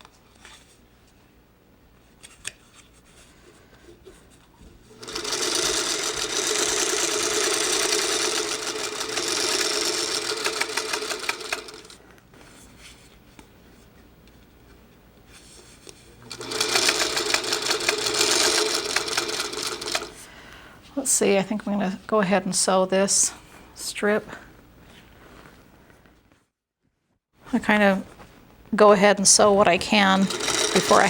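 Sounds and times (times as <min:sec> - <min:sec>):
sewing machine stitching: 0:04.9 - 0:12.0, 0:16.3 - 0:20.2, 0:29.3 - 0:31.0.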